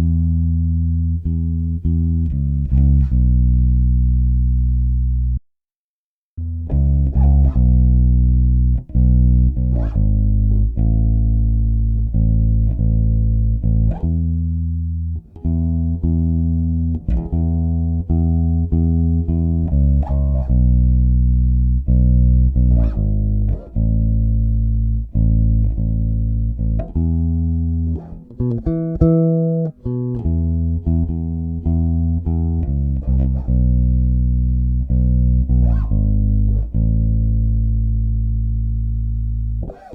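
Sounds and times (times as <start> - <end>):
electric bass plucked: 0.0 - 5.4, 6.4 - 39.9.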